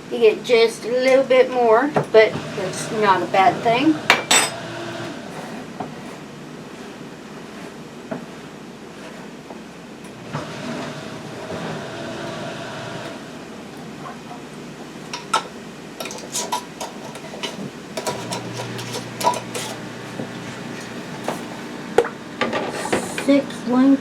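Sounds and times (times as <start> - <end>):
glass jars and utensils clinking: 4.1 - 4.7, 15.1 - 19.9.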